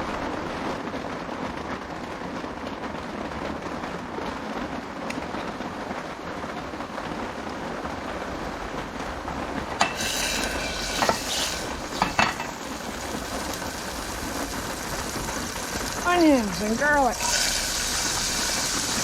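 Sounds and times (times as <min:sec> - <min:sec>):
rain on a tarp: 0:00.0 - 0:19.0
cookware clinking: 0:09.8 - 0:12.8
food sizzling in hot oil: 0:09.8 - 0:19.0.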